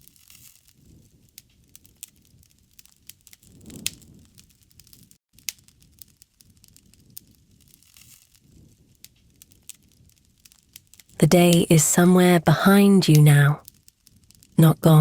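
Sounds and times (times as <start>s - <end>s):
fire popping: 0.1s - 11.6s
low rumble of flames: 0.2s - 11.1s
wood fire crackling: 1.3s - 11.2s.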